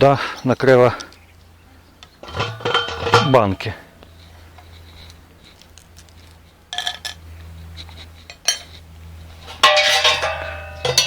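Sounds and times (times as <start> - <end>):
metal clinks and clanks: 2.2 - 4.0, 6.7 - 7.3, 8.2 - 11.0.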